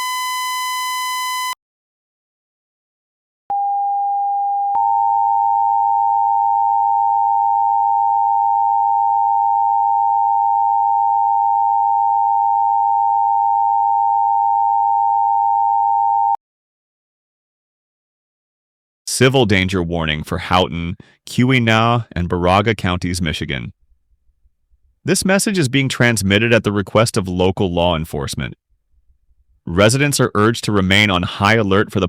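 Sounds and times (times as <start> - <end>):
two-tone alert signal: 0.0 - 1.6.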